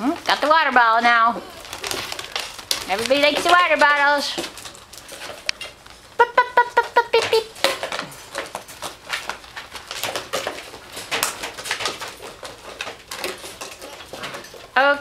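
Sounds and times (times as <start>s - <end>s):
plastic bottles crinkling: 0.0s - 15.0s.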